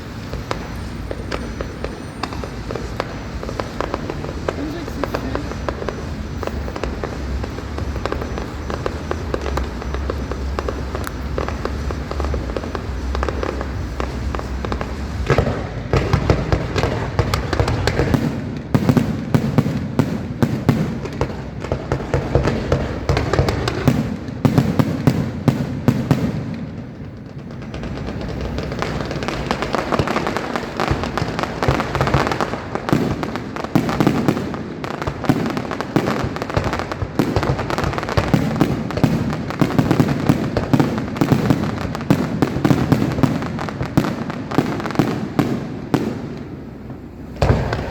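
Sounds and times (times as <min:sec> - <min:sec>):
fireworks bangs and crackles: 0:00.0 - 0:47.9.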